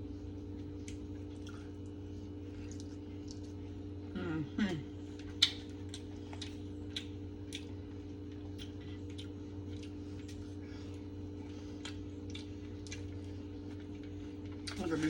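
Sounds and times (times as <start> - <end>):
low electrical hum: 0.0 - 15.0
chewing clicks: 0.8 - 3.6, 5.2 - 11.0, 11.7 - 14.8.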